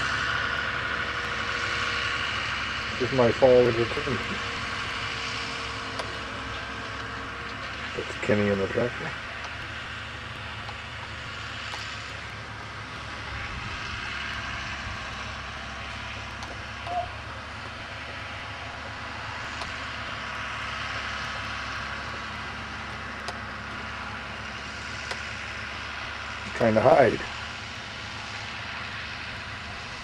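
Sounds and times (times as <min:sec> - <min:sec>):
distant farm machinery drone: 0:00.0 - 0:30.0.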